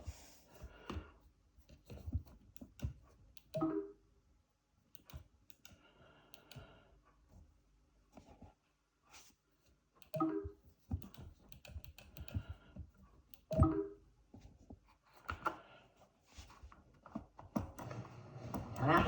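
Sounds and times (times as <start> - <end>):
controller buttons clicking: 11.0 - 12.5.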